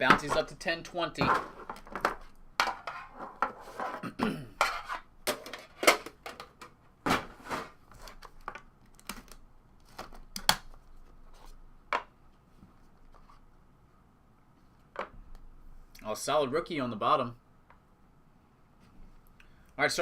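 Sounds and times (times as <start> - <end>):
plastic packaging clicks: 8.4 - 10.8.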